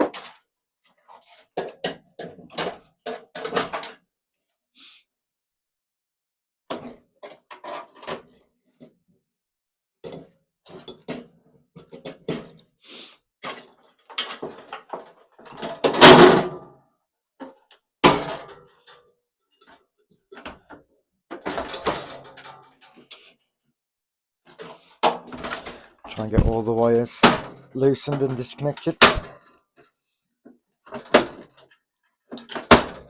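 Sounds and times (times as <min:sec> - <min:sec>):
microwave parts knocking and clattering: 0:01.0 - 0:04.0, 0:13.4 - 0:16.7, 0:17.4 - 0:18.8, 0:19.6 - 0:23.0, 0:24.5 - 0:29.6, 0:30.8 - 0:33.0.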